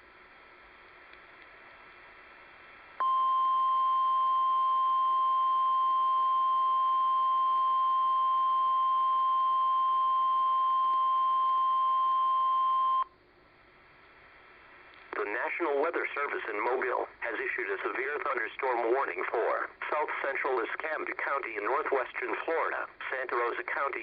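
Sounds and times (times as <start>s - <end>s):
faint static hiss: 0.0s - 24.0s
steady alarm beep: 3.0s - 13.1s.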